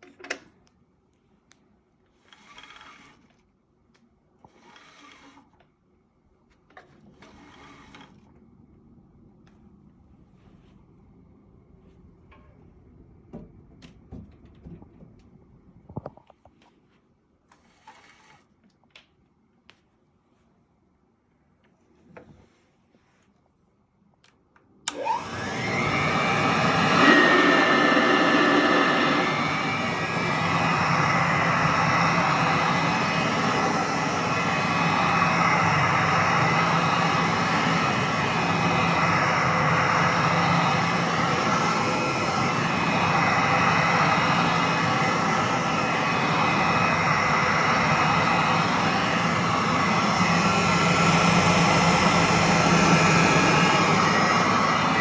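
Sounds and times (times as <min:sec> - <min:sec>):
vacuum cleaner motor whining: 0:24.9 - 0:55.0.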